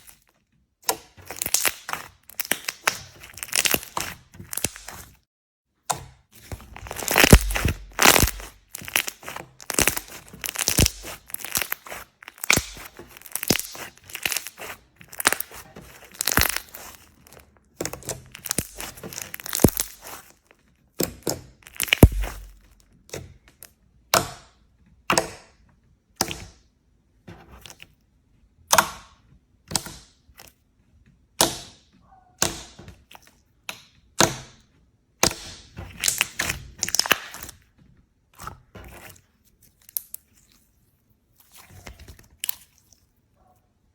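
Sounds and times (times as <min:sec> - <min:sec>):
slime crackling and popping: 0:01.2 - 0:05.2, 0:06.4 - 0:22.8, 0:35.2 - 0:37.6, 0:39.6 - 0:40.6.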